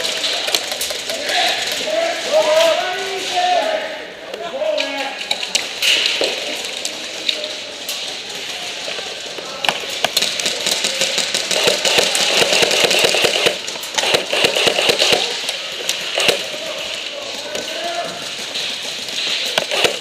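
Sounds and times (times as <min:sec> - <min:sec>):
airsoft gun full auto bursts: 0:10.4 - 0:15.4, 0:16.0 - 0:16.5, 0:19.6 - 0:20.0.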